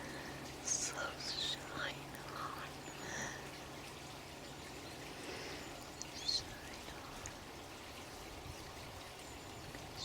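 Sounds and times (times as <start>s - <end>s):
running water: 0.0s - 10.0s
bird chirping: 2.6s - 10.0s.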